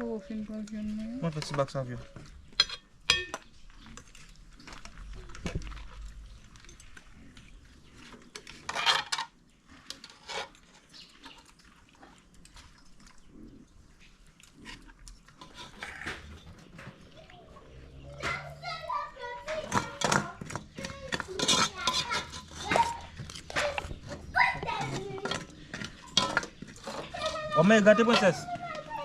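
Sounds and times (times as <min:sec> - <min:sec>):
utensils clinking against dishes: 0:02.5 - 0:04.2, 0:19.5 - 0:29.0.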